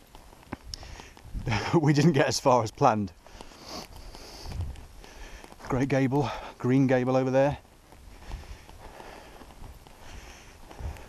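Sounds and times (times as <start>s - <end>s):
footsteps on stony ground: 0.0s - 11.0s
wind buffeting microphone: 0.6s - 2.3s, 3.9s - 6.2s, 8.0s - 11.0s.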